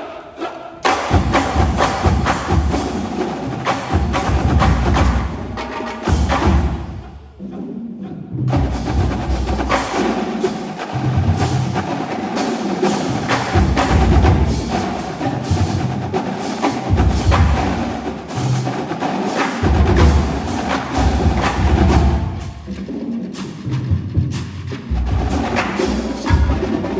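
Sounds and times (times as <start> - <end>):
drumline stick strokes: 0.0 - 7.2, 8.5 - 26.9
bass drum: 3.9 - 7.0, 13.5 - 15.9, 16.9 - 17.9, 19.6 - 22.7, 23.9 - 26.9.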